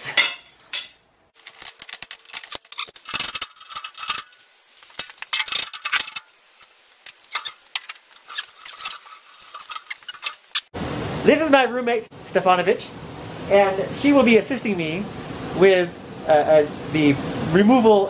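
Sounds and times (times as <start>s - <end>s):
metal parts clinking and scraping: 0.8s - 10.7s.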